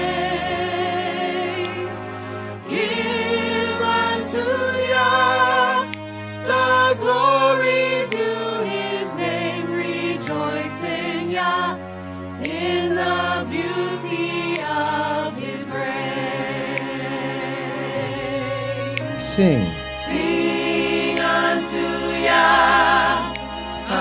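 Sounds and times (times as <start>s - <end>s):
vocal group singing harmonies: 0.0s - 24.0s.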